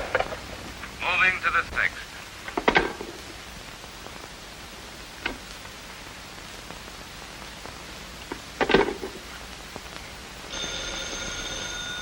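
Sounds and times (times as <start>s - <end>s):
soundtrack hiss: 0.0s - 12.0s
telephone bell ringing: 10.5s - 12.0s.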